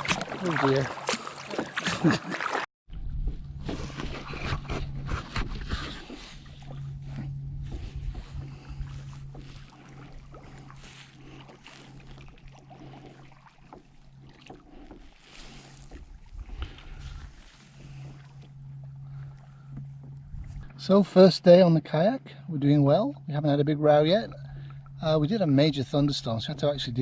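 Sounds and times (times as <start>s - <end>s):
paddle splashing in water: 0.0s - 21.0s
low hum: 2.9s - 27.0s.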